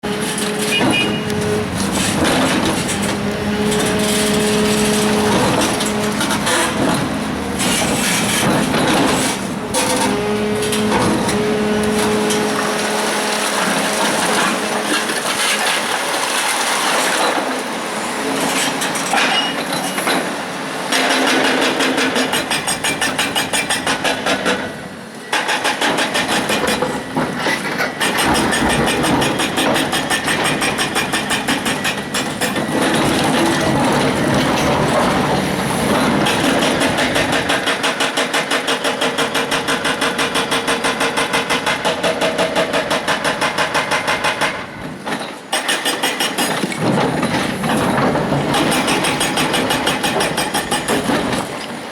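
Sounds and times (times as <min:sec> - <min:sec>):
excavator engine running: 0:00.0 - 0:15.8, 0:17.8 - 0:45.0
hydraulic breaker hammering stone: 0:18.5 - 0:51.9.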